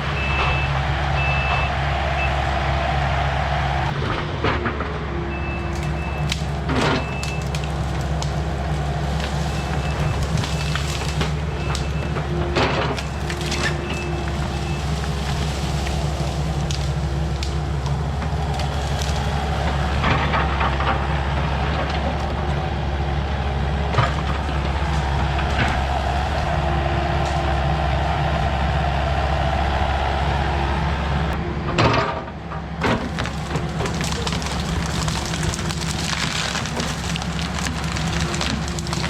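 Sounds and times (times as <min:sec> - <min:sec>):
diesel engine under load: 0:00.0 - 0:39.0
branches snapping: 0:05.6 - 0:21.4, 0:24.0 - 0:28.2, 0:32.8 - 0:39.0
brush crashing: 0:05.7 - 0:20.0, 0:33.0 - 0:39.0.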